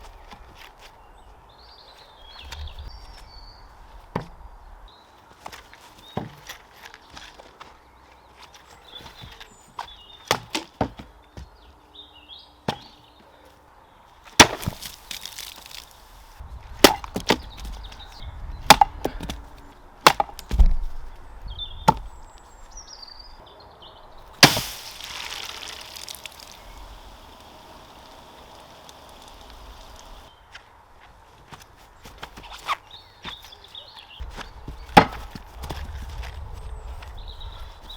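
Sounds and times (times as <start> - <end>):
dagger thudding into wooden target: 24.4 - 25.0.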